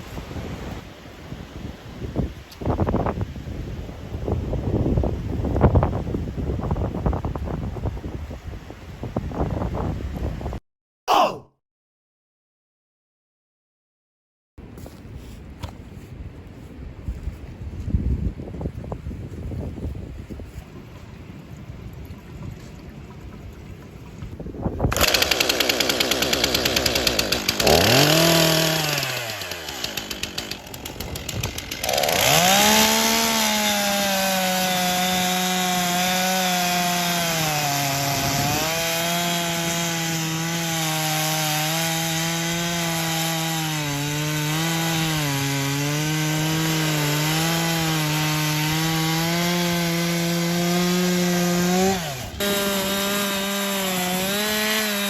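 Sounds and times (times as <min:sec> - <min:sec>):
chainsaw cutting log: 0:24.9 - 0:55.0.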